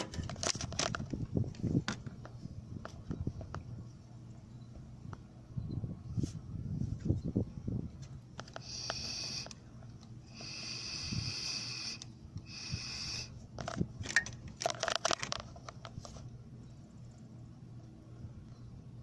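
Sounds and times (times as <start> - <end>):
sharp clicks and rattles: 0.0 - 3.6, 13.6 - 16.2
airy whistling hisses: 8.6 - 9.6, 10.3 - 13.4.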